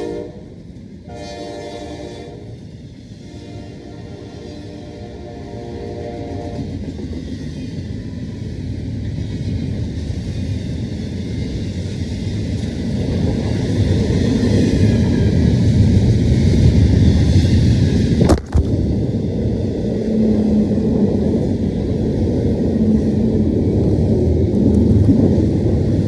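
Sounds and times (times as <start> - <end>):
train horn chord: 0.0 - 2.6, 3.2 - 6.7
freight train rumbling past: 0.0 - 26.0.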